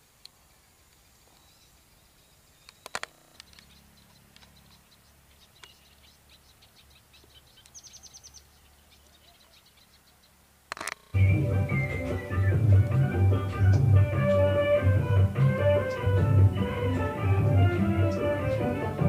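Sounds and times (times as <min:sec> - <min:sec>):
small birds chirping: 0:00.0 - 0:19.0
sharp clicks: 0:02.6 - 0:04.8, 0:10.7 - 0:11.2.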